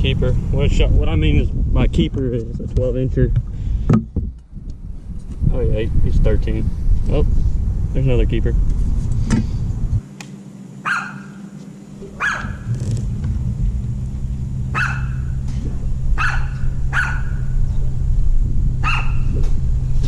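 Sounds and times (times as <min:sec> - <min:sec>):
steady low hum: 0:00.0 - 0:20.0
dog barking: 0:10.8 - 0:11.5, 0:12.2 - 0:12.7, 0:14.7 - 0:15.4, 0:16.2 - 0:17.6, 0:18.8 - 0:19.4.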